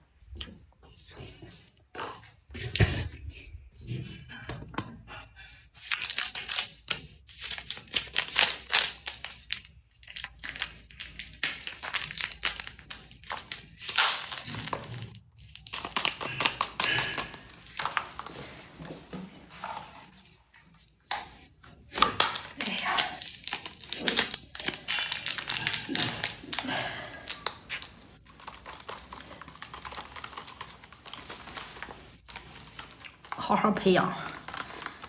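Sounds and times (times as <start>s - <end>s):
medicine packets crinkling and tearing: 5.8s - 18.6s, 21.9s - 35.0s.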